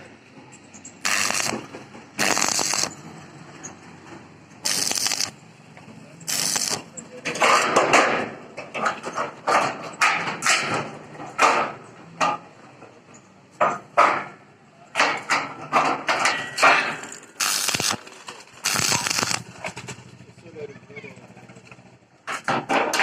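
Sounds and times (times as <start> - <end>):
hissing bursts: 1.0 - 3.0, 4.6 - 5.4, 6.3 - 6.9, 17.4 - 19.5.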